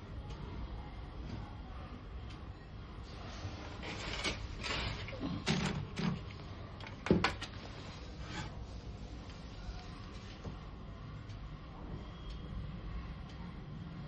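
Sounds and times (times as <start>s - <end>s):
low steady background: 4.6s - 14.0s.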